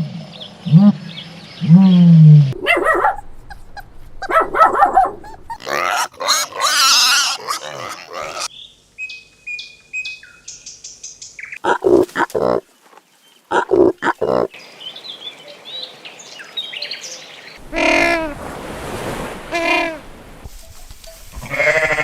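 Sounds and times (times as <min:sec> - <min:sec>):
loud harsh animal calls: 0:05.2 - 0:08.5, 0:17.6 - 0:18.5.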